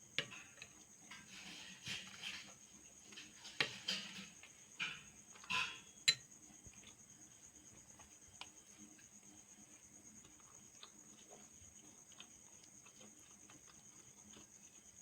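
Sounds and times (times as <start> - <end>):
chewing crunches and clicks: 8.0 - 15.0.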